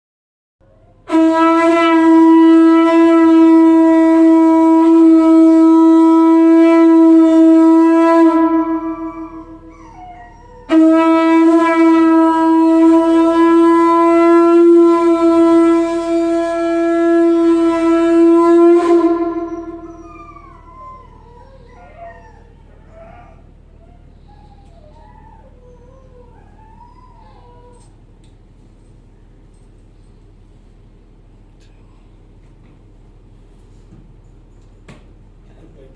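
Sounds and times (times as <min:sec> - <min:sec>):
conch shell blasts: 0:01.1 - 0:09.6, 0:10.6 - 0:21.0.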